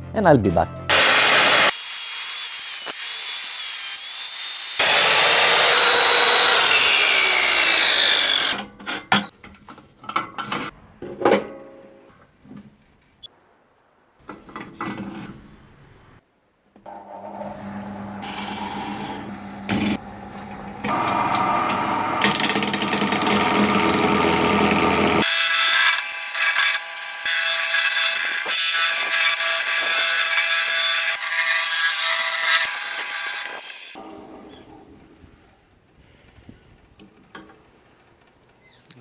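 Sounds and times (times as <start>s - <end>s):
power tools cutting wood: 0.9s - 8.6s, 16.9s - 34.0s
high whine of spinning tool: 4.9s - 8.6s.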